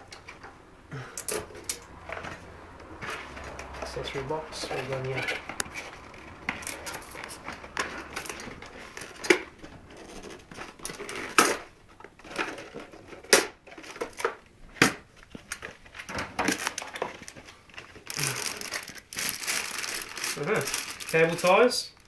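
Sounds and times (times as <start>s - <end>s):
packaging crinkling and rustling: 3.0s - 22.0s.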